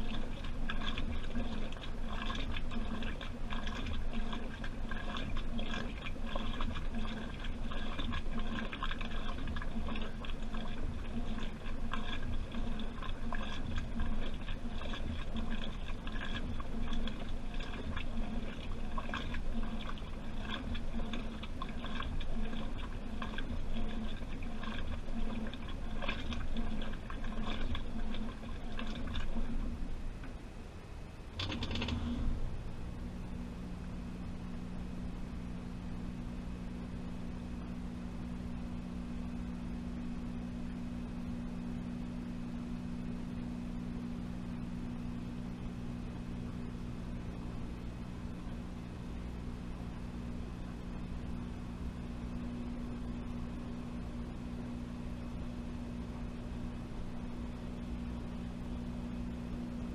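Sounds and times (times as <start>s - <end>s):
water sloshing in washing machine: 0.0s - 30.3s, 31.3s - 33.7s
washing machine hum: 0.0s - 59.9s.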